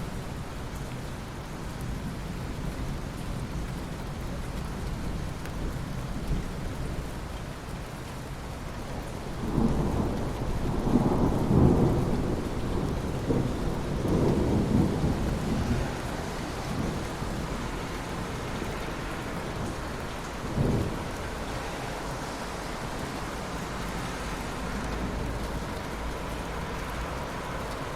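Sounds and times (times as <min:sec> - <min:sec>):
heavy rain: 0:00.0 - 0:27.9
thunder rolling: 0:09.5 - 0:18.6, 0:19.3 - 0:21.4.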